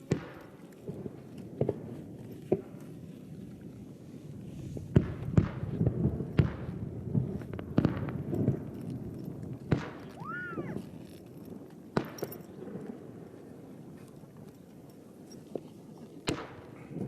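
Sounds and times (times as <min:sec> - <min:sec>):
fireworks crackling: 0:00.0 - 0:14.0
fireworks bangs: 0:04.8 - 0:08.7.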